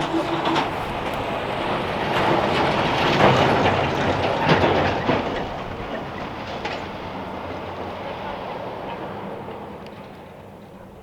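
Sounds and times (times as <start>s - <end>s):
steady mechanical rumble: 0.0s - 4.4s
clattering and rattling: 0.0s - 5.4s.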